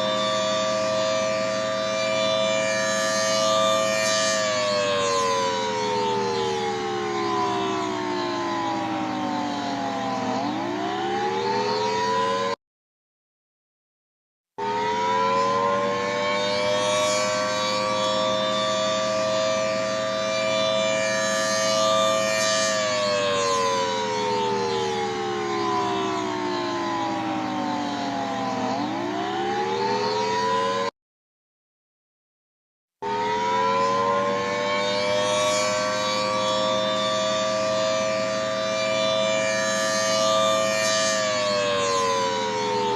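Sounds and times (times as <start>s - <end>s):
two-note warning siren wailing: 0.0s - 12.6s, 14.6s - 30.9s, 33.0s - 42.9s.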